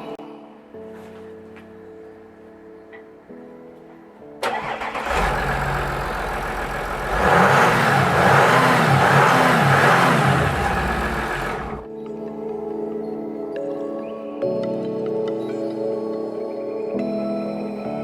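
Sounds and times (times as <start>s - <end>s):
diesel engine starting and idling: 4.4s - 11.8s
engine revving in short blips: 4.4s - 11.8s.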